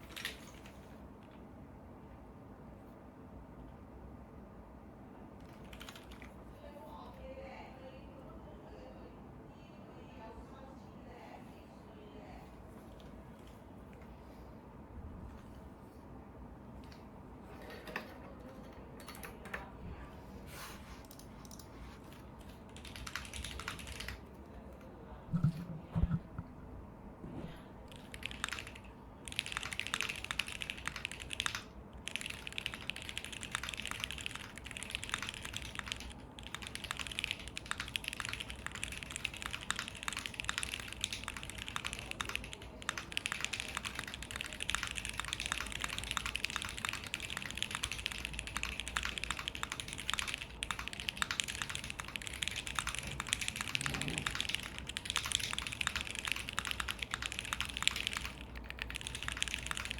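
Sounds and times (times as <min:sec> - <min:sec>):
mechanical keyboard typing: 0:00.0 - 0:00.8, 0:05.4 - 0:06.4, 0:21.0 - 0:24.3, 0:25.4 - 0:26.5, 0:27.9 - 0:59.9.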